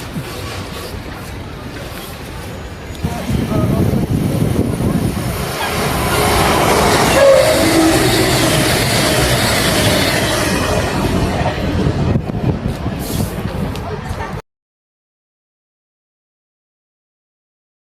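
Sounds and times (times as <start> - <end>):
train rumbling on rails: 0.0 - 14.4
train whine: 0.4 - 13.9.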